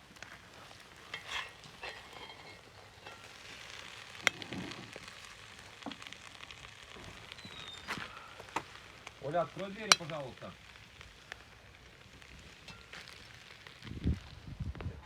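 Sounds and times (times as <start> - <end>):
metal spoon scraping cast-iron pot: 1.0 - 4.8, 9.8 - 10.2
low hiss: 3.5 - 14.7.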